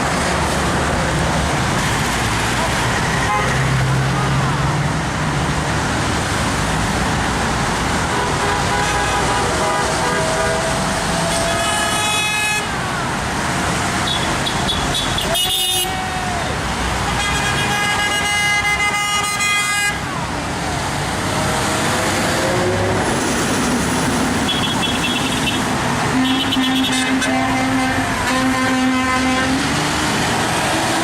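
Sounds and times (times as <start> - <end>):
heavy highway traffic rushing: 0.0 - 31.0
car horns honking: 3.1 - 3.8, 8.0 - 12.9, 14.0 - 16.1, 17.0 - 20.2, 24.3 - 29.8.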